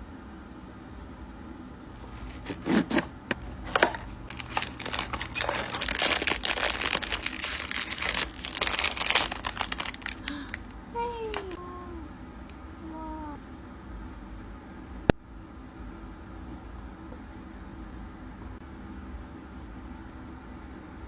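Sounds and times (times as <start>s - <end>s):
packaging crinkling and tearing: 1.9s - 11.6s.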